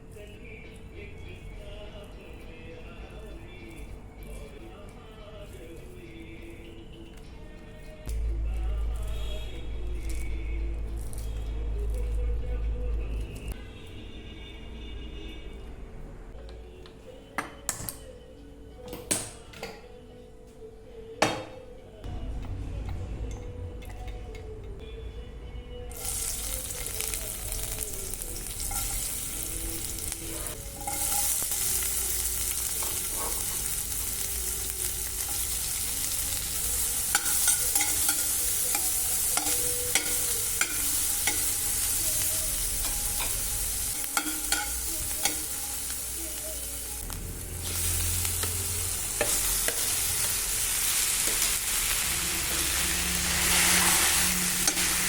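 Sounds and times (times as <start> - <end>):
food sizzling in oil: 25.9 - 55.0
utensil scraping pan: 52.2 - 55.0.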